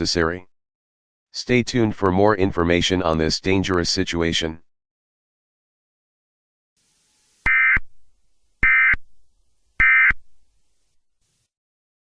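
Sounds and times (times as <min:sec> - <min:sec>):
digital data tone bursts: 0:07.2 - 0:07.9, 0:08.6 - 0:09.0, 0:09.8 - 0:10.2.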